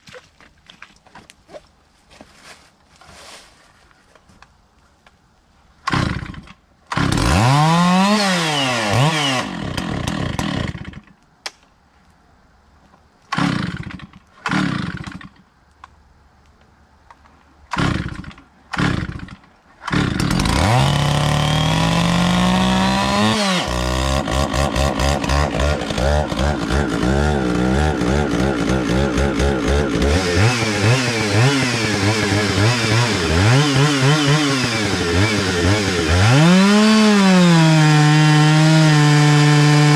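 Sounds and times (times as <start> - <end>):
chainsaw starting and revving: 5.8 - 11.1, 13.3 - 15.4, 17.7 - 39.9
chainsaw cutting wood: 5.8 - 11.2, 13.3 - 15.5, 17.7 - 39.9.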